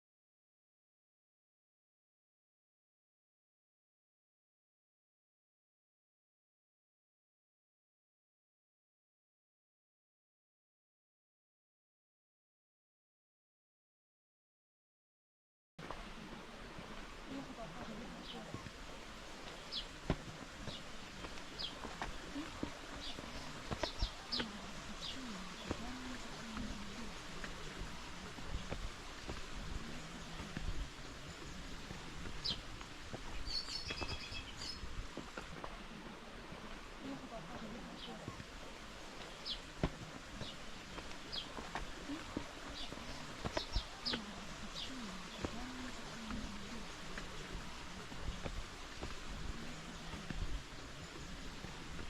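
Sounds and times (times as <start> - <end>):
bird chirping: 33.3 - 34.8.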